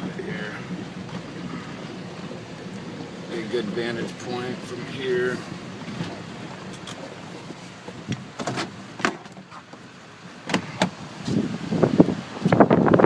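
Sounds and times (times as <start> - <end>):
clicks and knocks inside car: 5.7 - 11.4.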